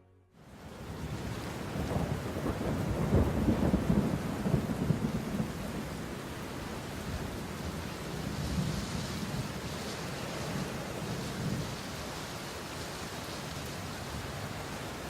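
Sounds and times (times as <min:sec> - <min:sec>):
rain-like hiss: 0:00.4 - 0:15.0
crackling thunder rumble: 0:00.6 - 0:12.0.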